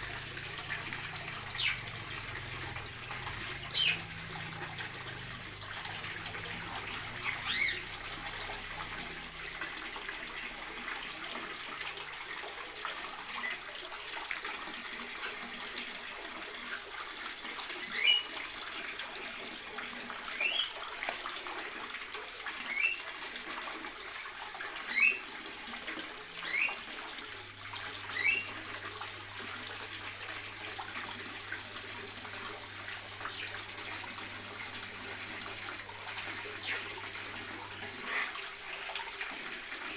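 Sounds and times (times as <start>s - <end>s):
birds chirping: 0.6s - 4.8s, 5.9s - 7.9s, 17.8s - 18.3s, 20.4s - 20.8s, 28.1s - 28.6s.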